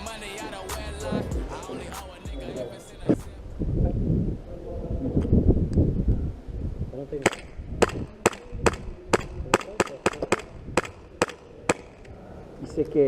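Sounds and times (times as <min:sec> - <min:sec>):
airsoft pistol shots: 0:07.2 - 0:12.0.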